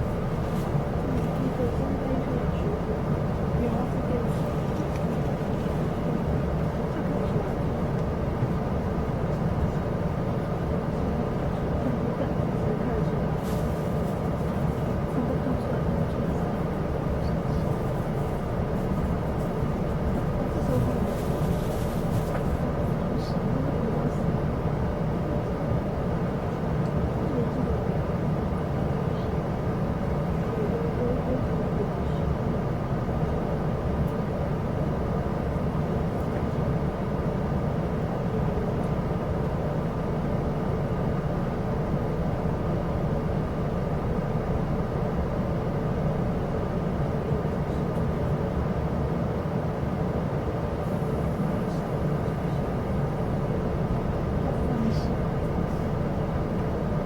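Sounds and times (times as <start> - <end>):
train carriage rumbling on track: 0.0 - 57.0.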